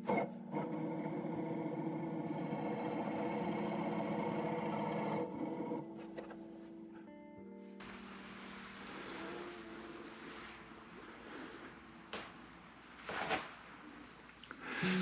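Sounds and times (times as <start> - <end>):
wood lathe whirring: 0.0 - 5.8.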